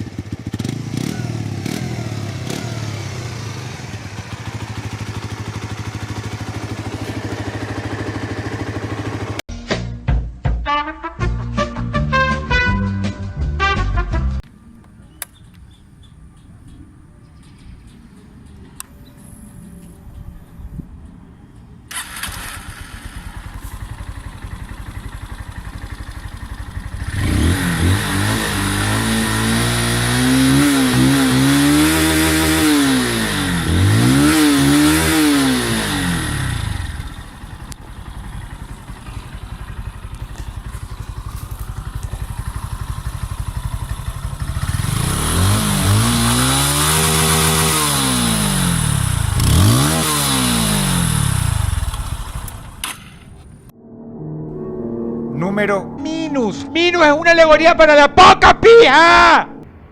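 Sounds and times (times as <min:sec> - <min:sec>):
motorcycle engine idling and revving: 0:00.0 - 0:09.5, 0:14.4 - 0:53.7.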